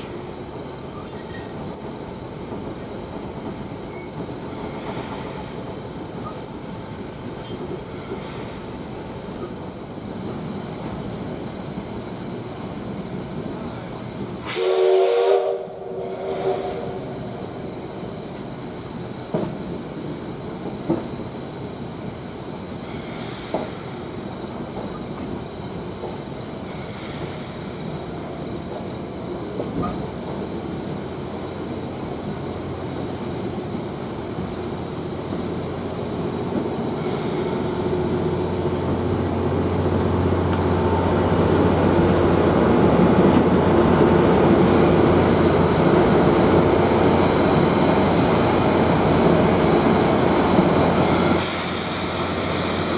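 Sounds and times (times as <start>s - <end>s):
steam locomotive whistle: 14.4s - 17.5s
steam hissing: 14.4s - 18.4s, 22.8s - 24.5s, 26.5s - 28.6s, 35.8s - 43.2s, 45.2s - 52.9s
insects chirping: 16.3s - 52.9s.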